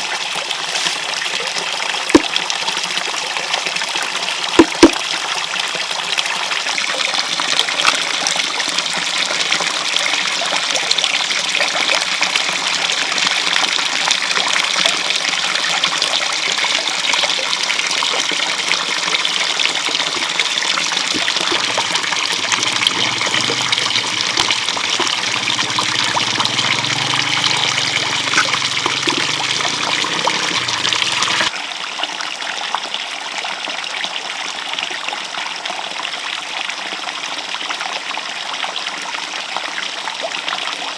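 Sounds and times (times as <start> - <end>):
water running and trickling: 16.9 - 31.5.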